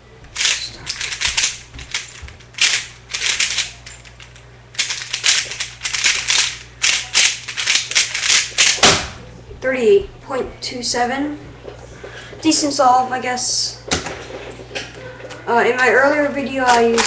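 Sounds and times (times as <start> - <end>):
plastic puzzle cube clacking: 0.4 - 2.0, 2.6 - 3.9, 4.8 - 8.8.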